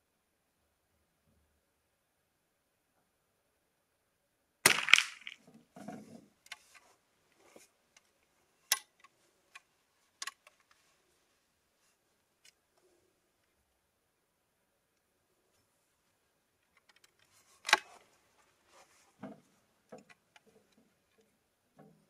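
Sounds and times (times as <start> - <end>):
rifle shot: 4.7 - 5.4.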